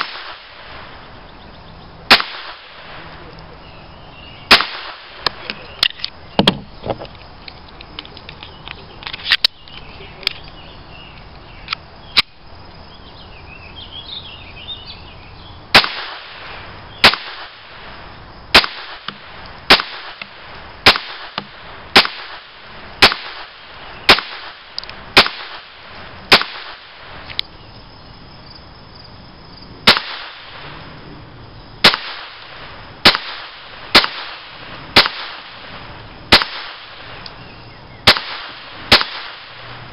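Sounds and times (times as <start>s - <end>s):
pistol shots: 2.1s - 3.0s, 4.5s - 5.4s, 15.7s - 17.6s, 18.5s - 27.1s, 29.8s - 30.6s, 31.8s - 35.7s, 36.3s - 37.1s, 38.0s - 39.8s
fainter distant gunshots: 2.1s - 3.2s, 4.5s - 5.5s, 15.7s - 17.9s, 18.5s - 27.2s, 29.8s - 31.0s, 31.8s - 37.2s, 38.0s - 39.9s.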